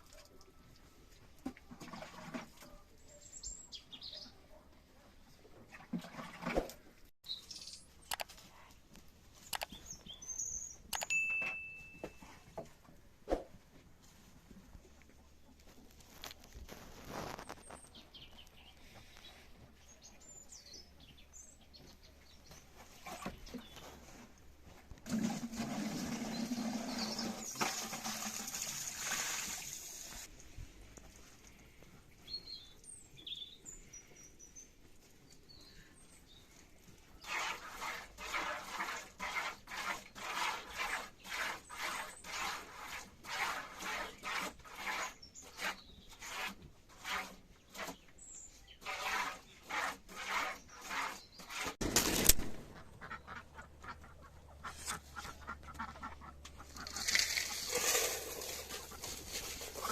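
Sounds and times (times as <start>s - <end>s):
small birds chirping: 7.2s - 8.7s, 9.3s - 11.2s, 17.4s - 24.0s, 31.7s - 37.3s.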